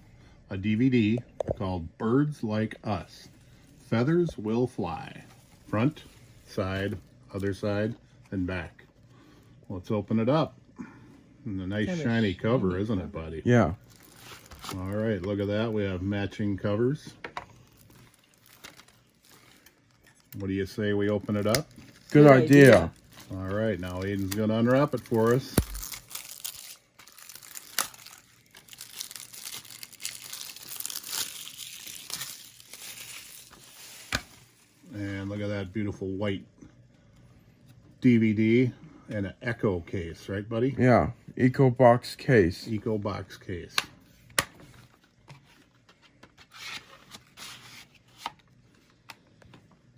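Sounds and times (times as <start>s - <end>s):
plastic wrapping crinkling: 13.8s - 15.5s, 17.5s - 34.9s.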